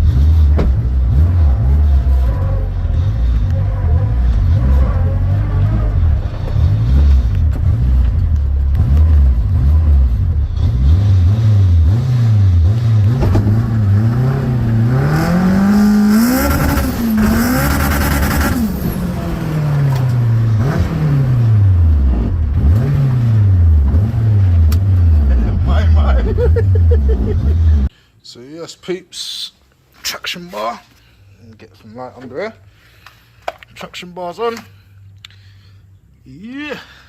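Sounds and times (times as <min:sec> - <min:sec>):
car engine revving: 0:00.0 - 0:27.9.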